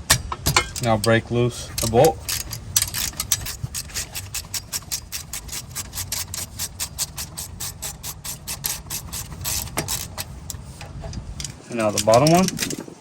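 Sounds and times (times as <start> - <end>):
ratchet clicking rapidly: 0.0 - 10.8, 11.4 - 12.9.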